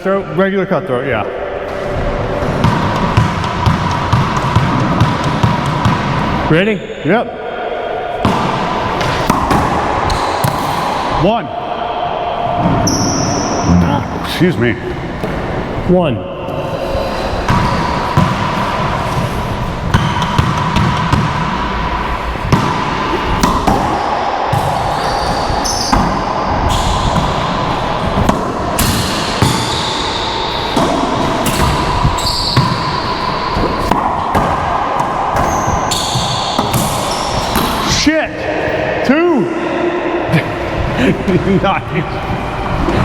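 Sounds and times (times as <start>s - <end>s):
sneakers squeaking on court floor: 12.6s - 13.8s, 17.0s - 37.9s
ball cracking off walls and racquets: 22.5s - 37.9s.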